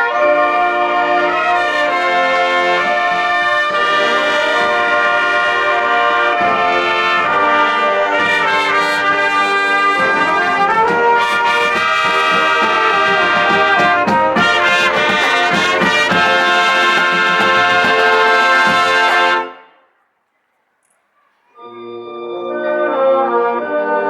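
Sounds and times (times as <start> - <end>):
marching band brass playing: 0.0 - 19.8
short percussion strokes: 0.7 - 19.5.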